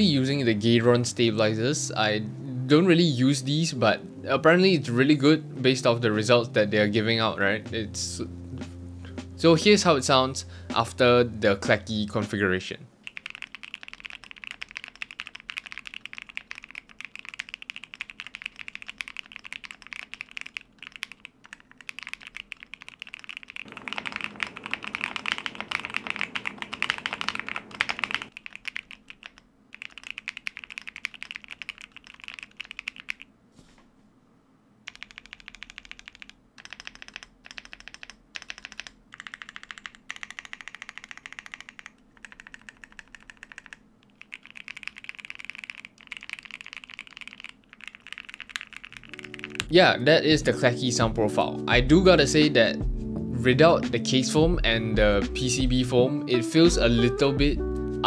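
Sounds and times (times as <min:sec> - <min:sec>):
clacky mechanical keyboard typing: 0:13.0 - 0:33.3, 0:34.9 - 0:49.8.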